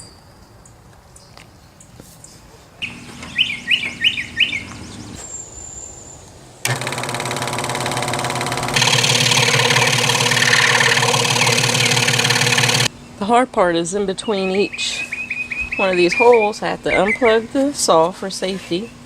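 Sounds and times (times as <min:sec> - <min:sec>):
scroll saw buzzing: 0:06.6 - 0:12.9
low hum: 0:06.7 - 0:13.0.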